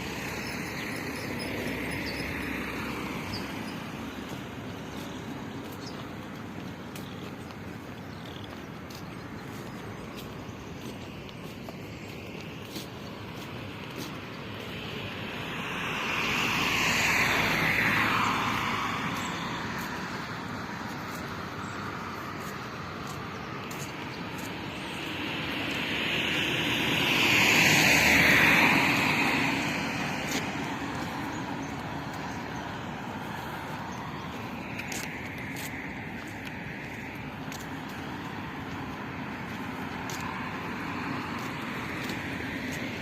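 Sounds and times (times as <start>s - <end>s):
road vehicles passing by: 0.0s - 43.0s.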